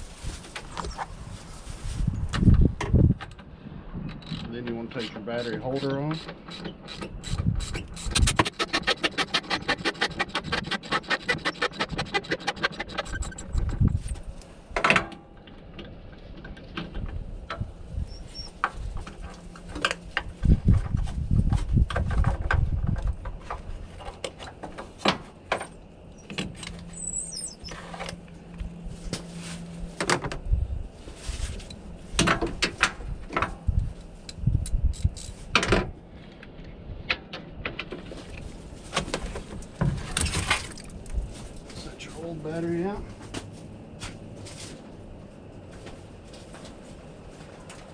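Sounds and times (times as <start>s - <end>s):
ratchet wrench clicking: 4.1s - 14.0s.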